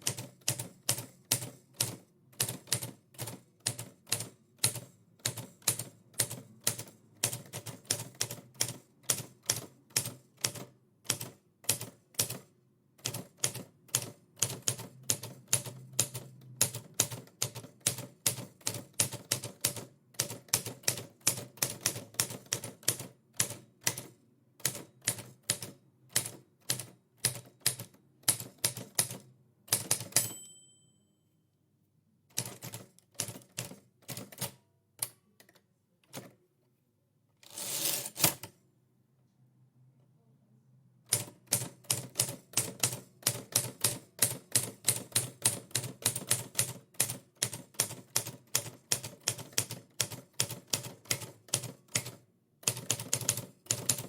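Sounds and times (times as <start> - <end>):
typewriter bell ding: 30.0 - 31.2.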